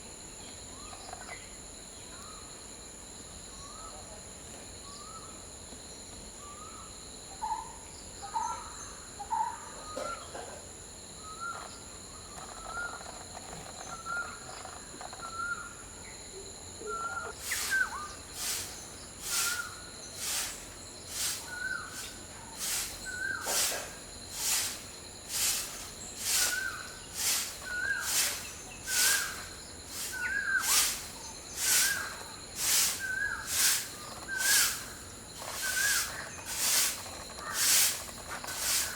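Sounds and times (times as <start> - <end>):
high-pitched insect drone: 11.2 - 38.9.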